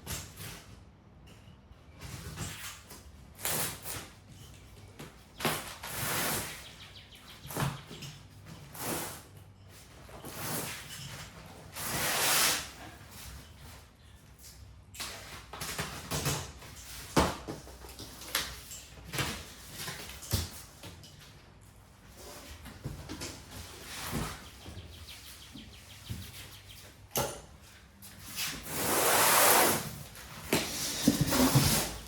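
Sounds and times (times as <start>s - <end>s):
cardboard scraping: 28.3s - 32.0s.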